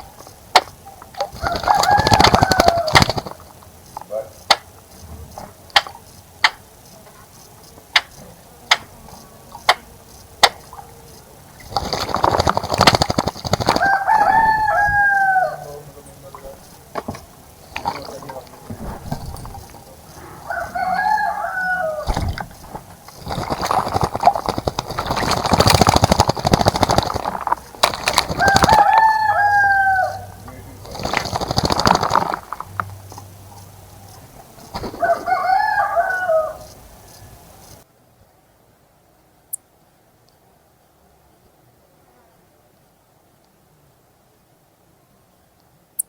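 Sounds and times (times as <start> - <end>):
bird splashing in water: 0.0 - 4.8, 11.5 - 15.4, 16.3 - 33.6, 34.2 - 36.9
sharp clicks: 0.0 - 14.4, 22.0 - 29.2, 30.0 - 35.0
rooster crowing: 1.3 - 3.4, 13.6 - 16.2, 19.4 - 22.6, 27.0 - 30.8, 34.8 - 37.6.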